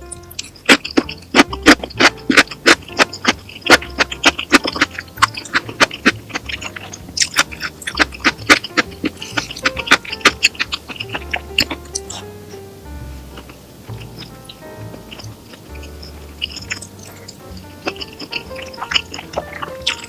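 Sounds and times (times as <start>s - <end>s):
crunchy food being chewed: 0.0s - 12.4s, 13.2s - 20.0s.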